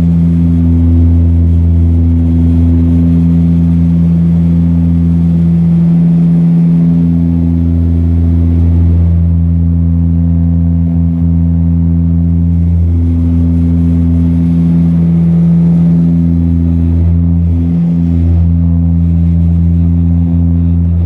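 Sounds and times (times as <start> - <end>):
turboprop engines droning: 0.0 - 21.0.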